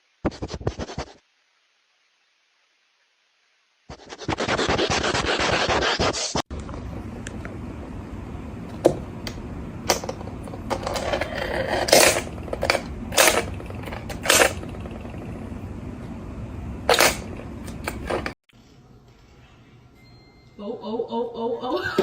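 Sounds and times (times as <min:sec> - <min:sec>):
scratching and rubbing: 0:00.2 - 0:01.2, 0:03.9 - 0:06.4, 0:10.7 - 0:15.4.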